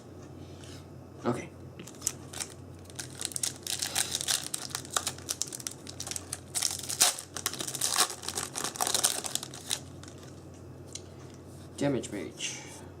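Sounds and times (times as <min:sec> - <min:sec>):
steady low hum: 0:00.0 - 0:13.0
foil wrappers crinkling and tearing: 0:01.8 - 0:10.4.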